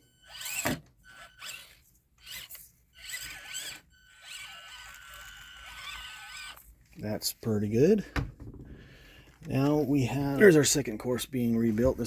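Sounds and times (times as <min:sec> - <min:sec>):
small electric motor whining: 0:00.0 - 0:06.8.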